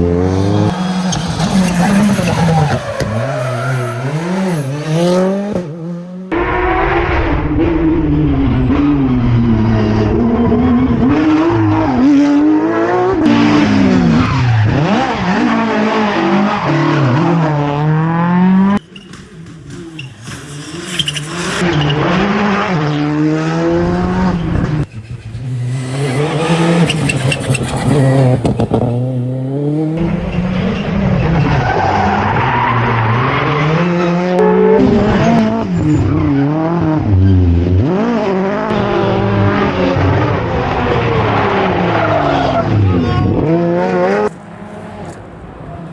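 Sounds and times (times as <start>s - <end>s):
rally car engines revving: 0.0s - 45.9s
tyre squeal: 0.3s - 5.2s, 18.8s - 22.0s, 24.8s - 34.8s.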